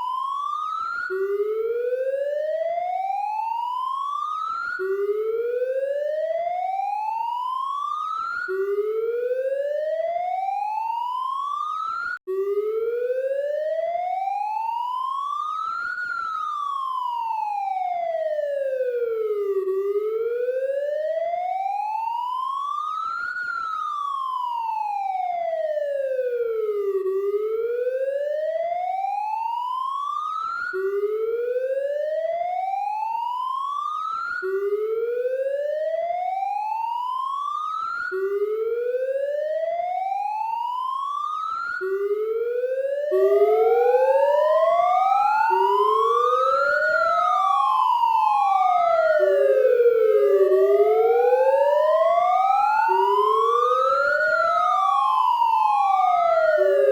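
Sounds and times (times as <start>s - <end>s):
second rising siren tone: 0.0s - 3.8s, 4.7s - 7.2s, 30.6s - 33.6s, 34.4s - 56.9s
police siren wailing: 0.0s - 56.9s.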